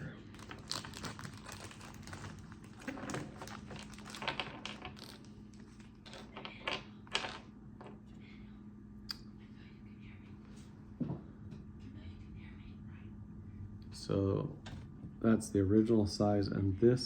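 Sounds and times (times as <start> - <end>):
small parts clicking and rustling: 0.4 - 7.4.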